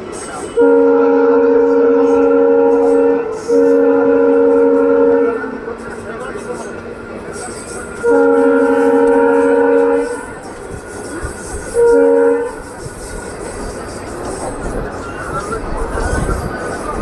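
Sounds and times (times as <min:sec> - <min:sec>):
train running: 0:00.0 - 0:17.0
locomotive horn: 0:00.6 - 0:05.8, 0:08.0 - 0:10.6, 0:11.6 - 0:12.8.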